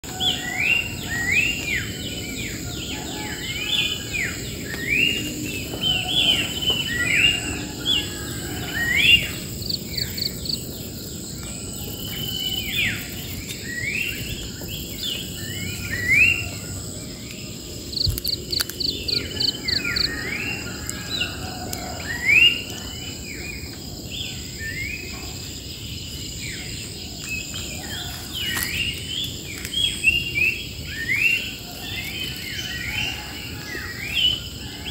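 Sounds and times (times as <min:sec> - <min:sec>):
birds whistling: 0:00.1 - 0:10.5
high insect drone: 0:00.1 - 0:34.9.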